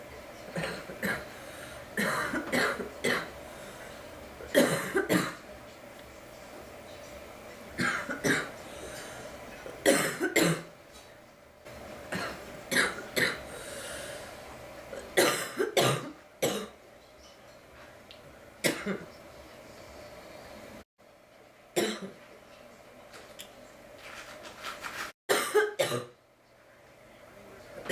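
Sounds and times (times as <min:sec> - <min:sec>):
girl coughing: 0:15.2 - 0:16.7, 0:25.3 - 0:26.2.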